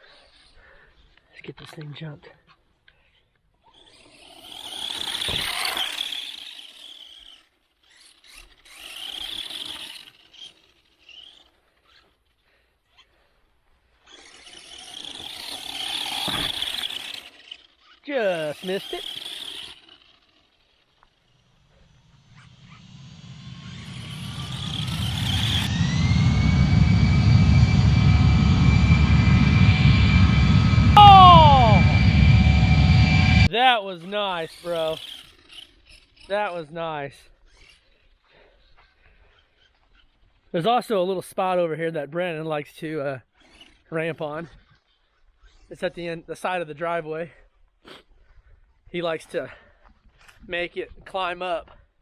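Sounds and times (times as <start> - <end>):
rc truck motor whining: 3.6 - 28.0, 34.5 - 36.3.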